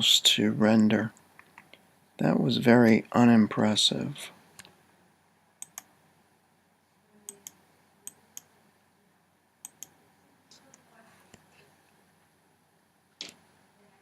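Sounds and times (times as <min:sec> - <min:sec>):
computer mouse clicks: 0:01.4 - 0:01.8, 0:05.6 - 0:05.9, 0:07.3 - 0:08.5, 0:09.6 - 0:11.5, 0:13.2 - 0:13.4.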